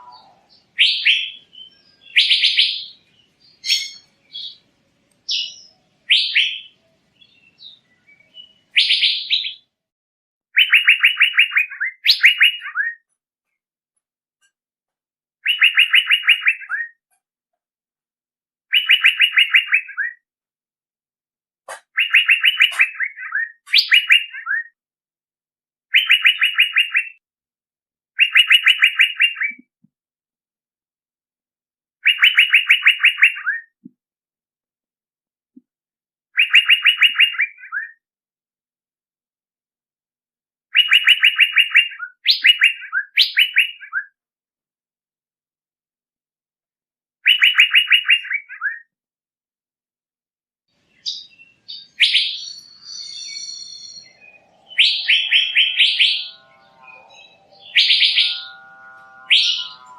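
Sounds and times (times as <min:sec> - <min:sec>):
bird calling in rapid trills: 0:10.6 - 0:13.0, 0:15.4 - 0:17.0, 0:18.7 - 0:20.2, 0:22.0 - 0:24.7, 0:25.9 - 0:27.2, 0:28.2 - 0:29.6, 0:32.0 - 0:33.7, 0:36.4 - 0:38.0, 0:40.8 - 0:44.1, 0:47.3 - 0:48.8, 0:51.0 - 0:59.9
quick upswept bird notes: 0:51.0 - 0:59.9.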